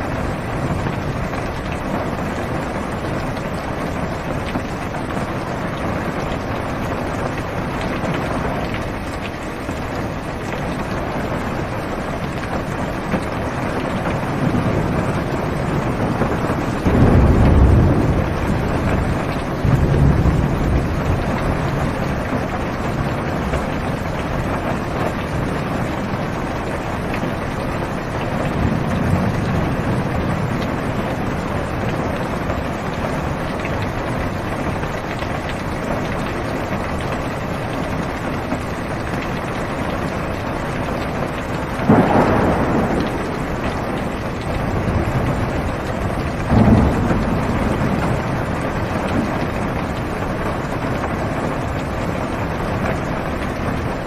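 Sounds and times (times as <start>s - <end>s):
thunderclaps: 0.0s - 36.9s, 39.4s - 54.0s
low rumble of thunder: 0.0s - 37.0s, 37.6s - 54.0s
heavy rain on car roof: 0.0s - 54.0s.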